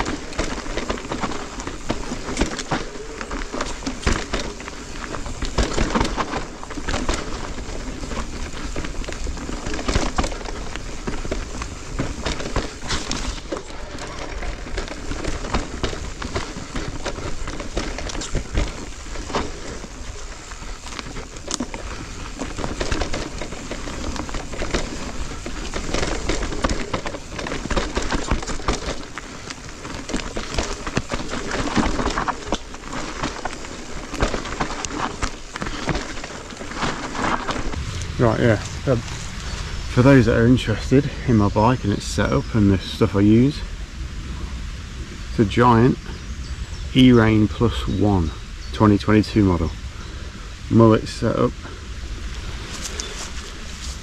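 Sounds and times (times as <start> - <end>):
bike chain and frame clattering: 0.0 - 40.2
bike tyres crunching over stones: 0.0 - 54.0.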